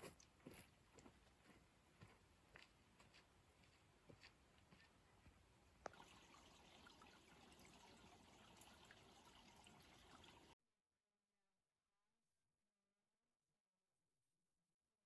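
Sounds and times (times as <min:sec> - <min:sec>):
faint creek water trickling: 0:05.8 - 0:10.6.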